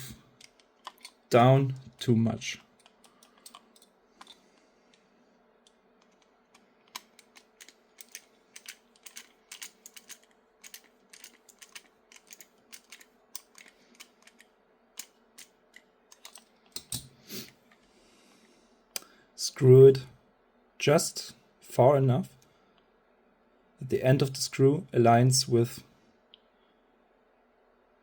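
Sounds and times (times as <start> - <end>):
small clicks of screwdriver: 2.8 - 5.0.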